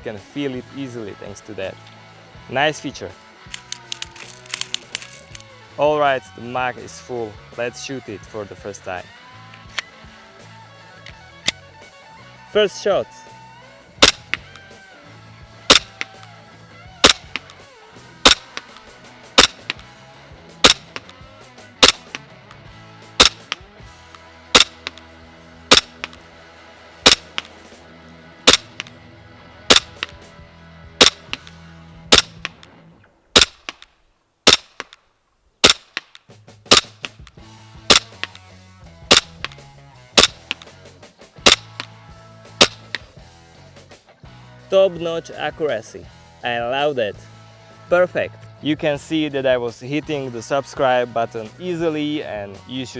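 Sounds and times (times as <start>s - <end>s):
airsoft pistol shots: 14.0s - 14.5s, 15.7s - 16.3s, 17.0s - 17.5s, 18.2s - 19.8s, 20.6s - 21.1s, 21.8s - 22.2s, 23.2s - 23.6s, 24.6s - 25.0s, 25.7s - 26.2s, 27.0s - 27.6s, 28.5s - 28.9s, 29.7s - 30.2s, 31.0s - 31.5s, 32.1s - 32.6s, 33.4s - 33.8s, 34.5s - 35.0s, 35.6s - 37.3s, 37.9s - 38.4s, 39.1s - 39.6s, 40.2s - 40.7s, 41.4s - 41.9s, 42.6s - 43.0s.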